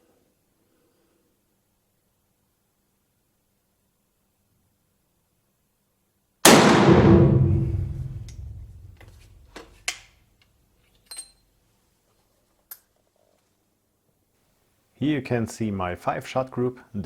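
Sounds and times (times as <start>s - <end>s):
rifle shot boom: 6.5s - 9.5s.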